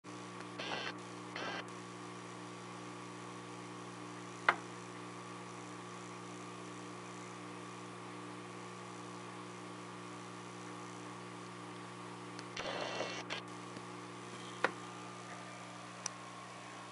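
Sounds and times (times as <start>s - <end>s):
electric typewriter motor humming: 12.5s - 13.6s.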